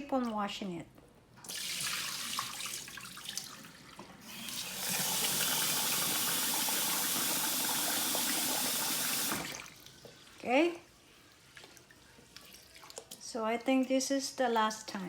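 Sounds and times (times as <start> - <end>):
tap running water into pot: 1.4 - 10.3
rice sloshing with small clicks: 11.4 - 14.0.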